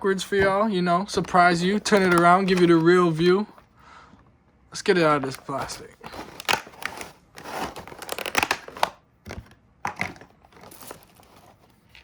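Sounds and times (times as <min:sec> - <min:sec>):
plastic packaging crinkling and tearing: 0:05.4 - 0:12.0.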